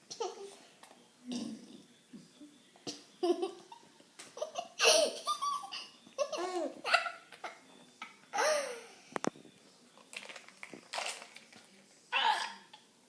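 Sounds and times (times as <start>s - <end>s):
baby laughing: 4.4s - 7.6s.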